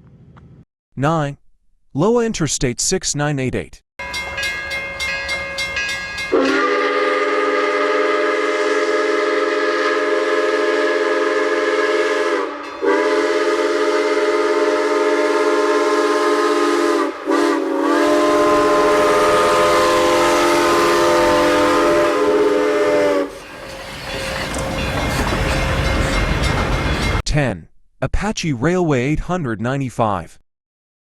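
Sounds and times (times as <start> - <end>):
steam locomotive chime whistle: 4.0 - 27.2.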